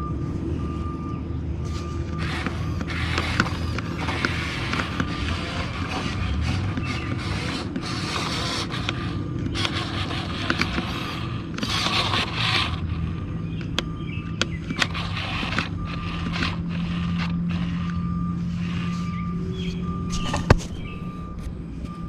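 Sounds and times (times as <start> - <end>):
scraping dirt: 1.7 - 21.5
small electric motors running: 2.2 - 21.1
clicks: 13.6 - 18.0, 19.6 - 22.0.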